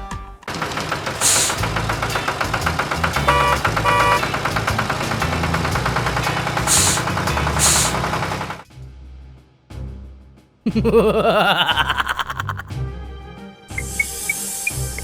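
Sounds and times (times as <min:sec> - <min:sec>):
cartoon engine rattle: 0:00.5 - 0:08.6
hiss bursts: 0:01.0 - 0:03.6, 0:04.2 - 0:08.6, 0:13.8 - 0:15.0.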